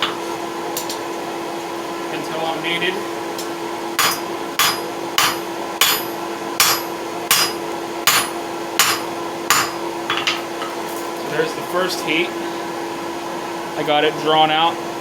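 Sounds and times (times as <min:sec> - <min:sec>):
hammer striking hot steel on anvil: 0:04.0 - 0:10.4.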